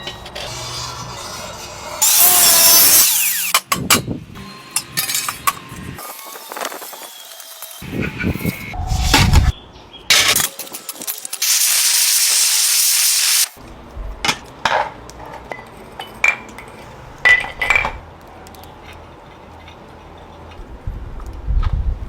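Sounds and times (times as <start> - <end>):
small hard objects clinking: 10.4 - 12.0
loud spray hiss: 11.4 - 13.6.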